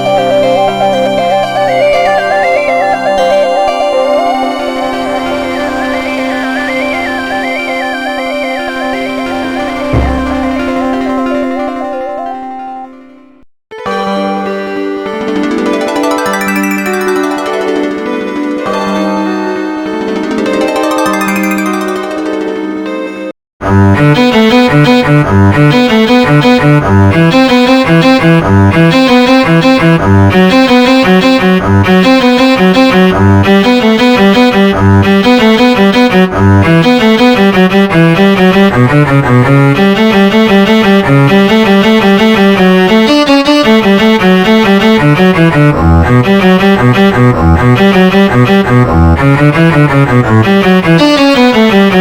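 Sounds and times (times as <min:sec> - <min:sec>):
polyphonic ringtone melody: 0:15.8 - 0:18.5, 0:20.4 - 0:22.8.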